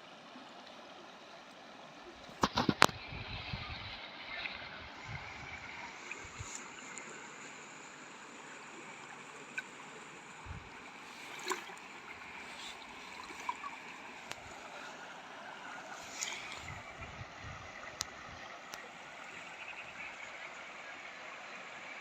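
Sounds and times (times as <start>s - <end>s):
river flowing over stones: 0.0s - 22.0s
faint clicks: 13.3s - 14.7s.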